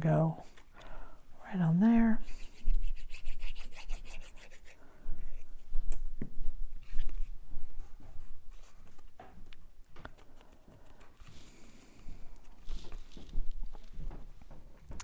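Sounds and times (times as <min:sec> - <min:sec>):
hands rubbing cardstock: 0:02.2 - 0:04.8.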